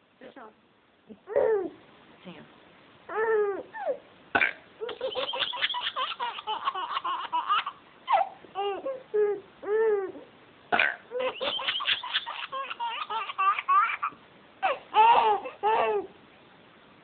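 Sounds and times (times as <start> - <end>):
baby giggling: 1.3 - 1.8, 4.8 - 10.3, 11.1 - 16.1.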